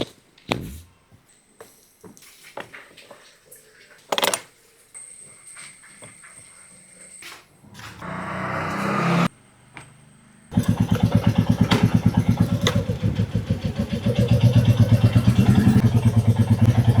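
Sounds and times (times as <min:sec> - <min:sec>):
rising starter whir: 0:07.6 - 0:09.3, 0:10.4 - 0:17.0
motorcycle engine thumping idle: 0:07.7 - 0:17.0.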